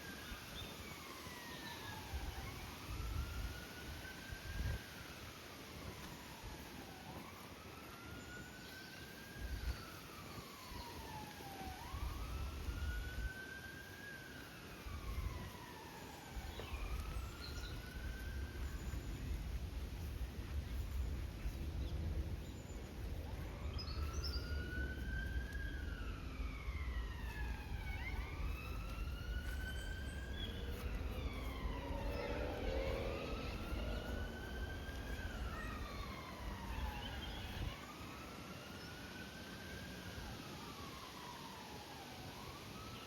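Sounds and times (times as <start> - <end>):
emergency vehicle siren wailing: 0.0 - 43.0
low rumble: 27.1 - 37.7.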